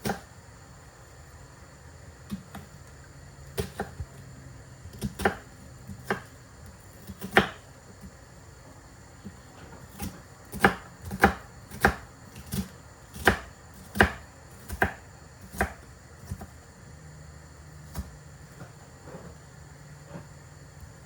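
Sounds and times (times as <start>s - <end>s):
knife chopping on cutting board: 0.0s - 0.2s, 3.6s - 4.1s, 4.9s - 6.3s, 7.0s - 8.1s, 9.2s - 16.5s.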